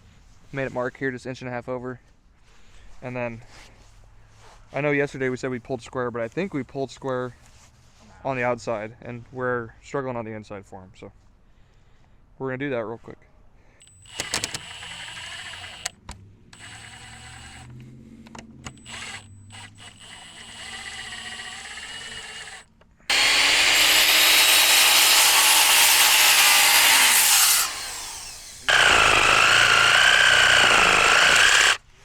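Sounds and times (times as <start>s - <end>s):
power saw cutting wood: 13.8s - 15.9s, 16.6s - 17.8s, 18.6s - 31.9s.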